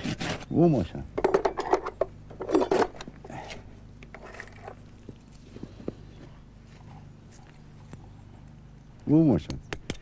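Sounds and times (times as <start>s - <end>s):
knocks and scrapes of horseshoeing: 0.0s - 0.6s, 1.2s - 5.2s.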